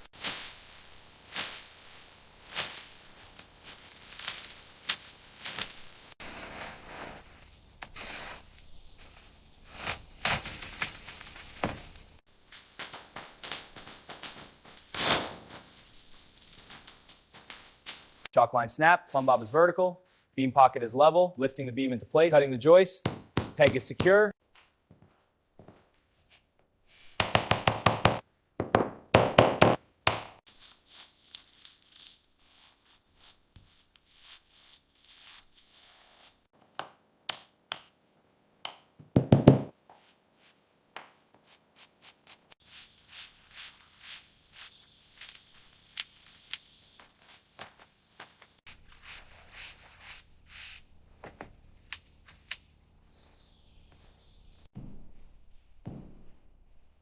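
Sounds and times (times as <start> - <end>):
sharp knocks: 23.0 - 24.2, 27.2 - 30.4.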